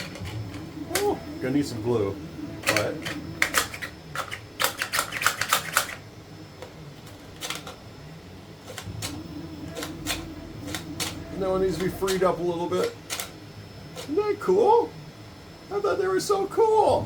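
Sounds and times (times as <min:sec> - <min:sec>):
hard plastic pieces clicking: 0:02.6 - 0:06.0.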